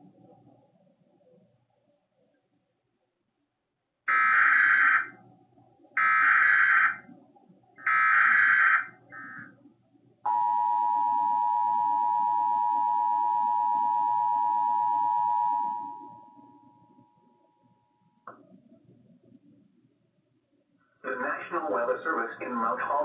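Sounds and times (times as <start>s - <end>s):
two-tone attention signal: 10.3s - 16.6s.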